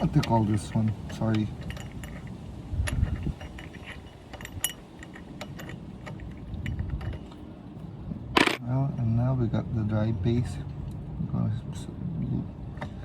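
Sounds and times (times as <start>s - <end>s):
light metallic clinks and taps: 0.0s - 7.4s.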